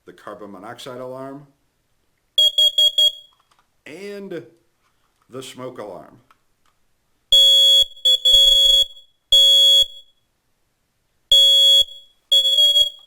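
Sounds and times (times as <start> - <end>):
smoke alarm beeping: 2.4 - 3.4, 7.3 - 10.2, 11.3 - 13.0.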